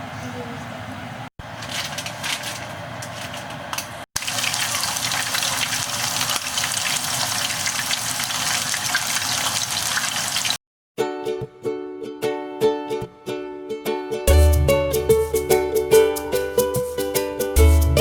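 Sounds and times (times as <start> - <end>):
hot oil sizzling and crackling: 4.2 - 10.6.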